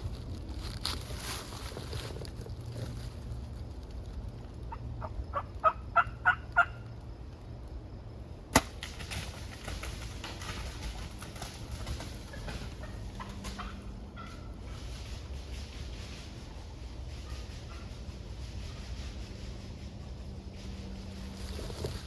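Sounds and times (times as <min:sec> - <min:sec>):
turkey gobbling: 0:04.7 - 0:06.8, 0:12.3 - 0:14.6, 0:17.2 - 0:18.0
sharp snap: 0:08.5 - 0:08.8.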